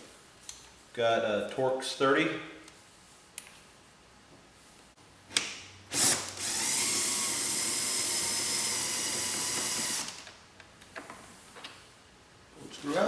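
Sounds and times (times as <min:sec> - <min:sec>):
cordless drill running: 0:05.9 - 0:10.3
drill bit clicks: 0:09.1 - 0:10.3.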